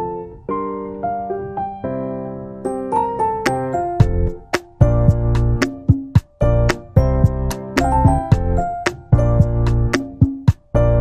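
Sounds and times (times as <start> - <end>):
keyboard melody: 0.0 - 11.0
percussion hits: 3.5 - 10.8
bass line: 4.0 - 5.7, 6.4 - 10.1, 10.8 - 11.0.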